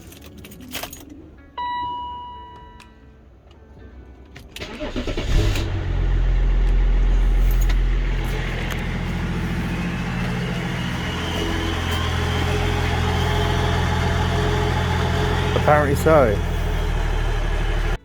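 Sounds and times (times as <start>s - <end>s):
car starter cranking: 4.4s - 18.0s
car engine idling: 4.7s - 18.0s.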